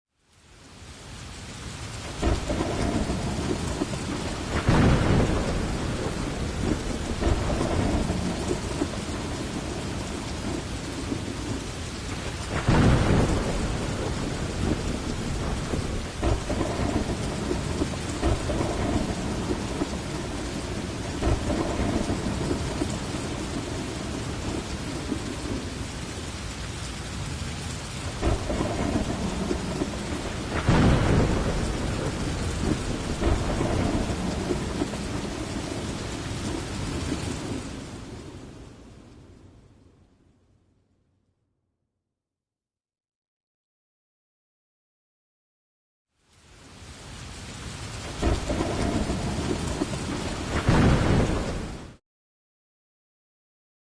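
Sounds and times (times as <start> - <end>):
heavy rain falling: 0.2 - 40.0, 46.1 - 52.0
rolling thunder: 2.1 - 26.0, 27.2 - 39.4, 47.7 - 52.0.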